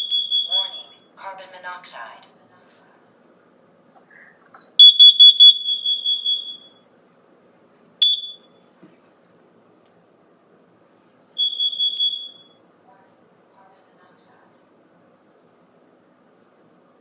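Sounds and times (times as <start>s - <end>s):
alarm chirp: 0.0s - 1.1s, 4.8s - 6.8s, 8.0s - 8.6s, 11.4s - 12.6s
smoke alarm beeping: 0.0s - 1.1s, 4.8s - 6.9s, 8.0s - 8.6s, 11.4s - 12.6s.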